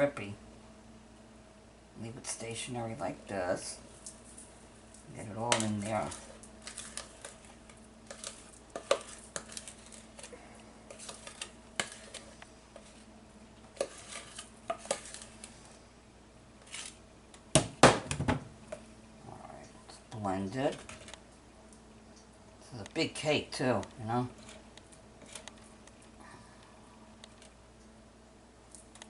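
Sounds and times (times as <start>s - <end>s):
utensil scraping a bowl: 5.3s - 13.1s, 13.7s - 15.6s, 16.6s - 17.0s.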